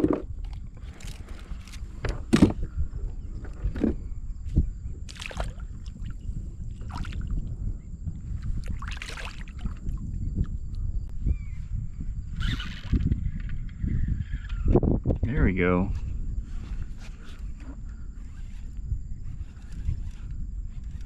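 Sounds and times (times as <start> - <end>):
steady low rumble: 0.0 - 12.4, 13.1 - 21.0
water splashing and sloshing: 5.1 - 7.4, 8.4 - 10.0.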